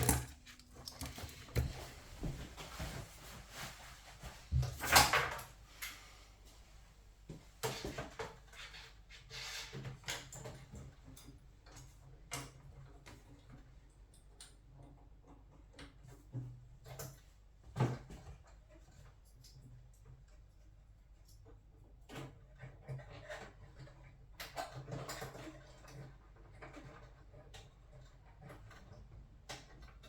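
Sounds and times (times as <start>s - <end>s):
tools clattering on metal parts: 0.0s - 1.8s.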